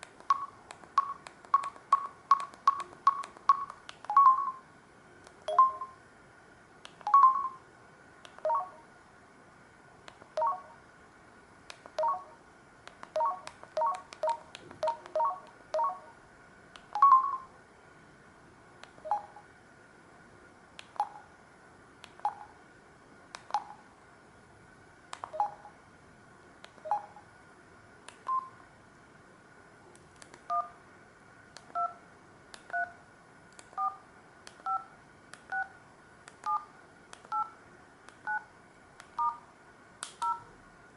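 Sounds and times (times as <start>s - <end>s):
faint high whine: 0.0s - 40.9s
phone keypad beeps: 0.3s - 4.6s, 5.5s - 6.0s, 7.0s - 7.6s, 8.4s - 8.8s, 10.4s - 10.8s, 12.0s - 12.3s, 13.2s - 16.1s, 17.0s - 17.5s, 19.0s - 19.4s, 25.3s - 25.7s, 26.8s - 27.2s, 28.3s - 28.5s, 30.5s - 30.7s, 34.7s - 34.9s, 36.4s - 36.7s, 37.3s - 37.5s, 39.2s - 39.4s, 40.2s - 40.5s.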